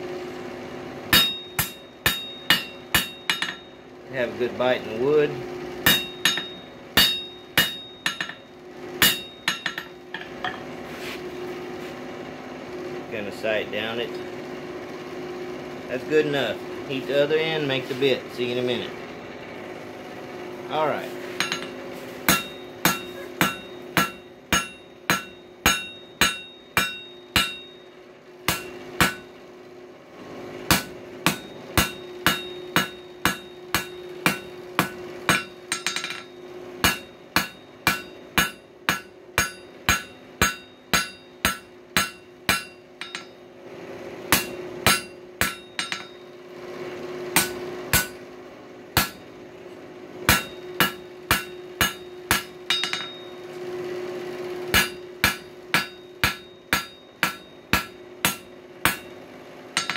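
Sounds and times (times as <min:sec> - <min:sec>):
steady low hum: 0:00.0 - 0:59.9
hammer ringing on anvil: 0:01.1 - 0:03.8, 0:05.8 - 0:10.7, 0:21.4 - 0:29.4, 0:30.7 - 0:43.4, 0:44.3 - 0:46.4, 0:47.4 - 0:48.2, 0:49.0 - 0:49.3, 0:50.3 - 0:53.5, 0:54.7 - 0:59.2.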